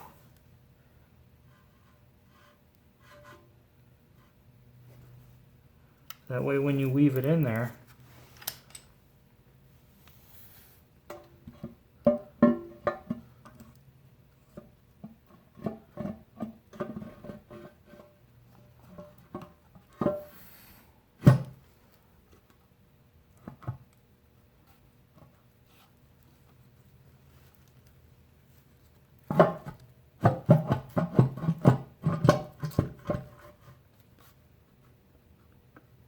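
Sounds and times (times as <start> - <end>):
metal clinks and knocks: 8.4 - 9.0.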